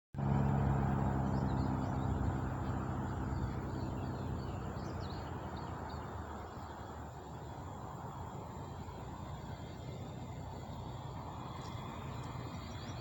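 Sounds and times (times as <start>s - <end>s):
birds chirping faintly: 0.2s - 13.0s.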